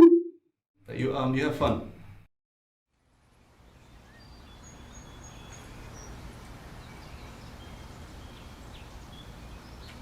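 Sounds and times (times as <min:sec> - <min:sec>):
small birds chirping: 0:03.6 - 0:10.0.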